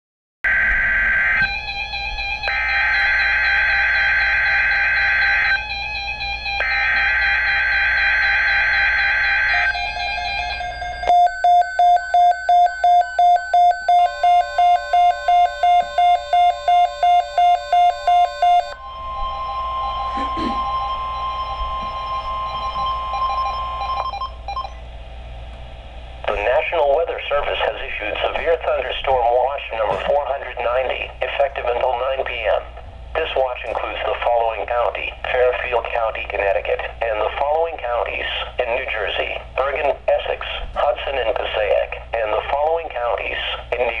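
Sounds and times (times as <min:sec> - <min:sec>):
steady attention tone: 0:00.5 - 0:44.0
pulsed alert beeping: 0:08.2 - 0:24.8.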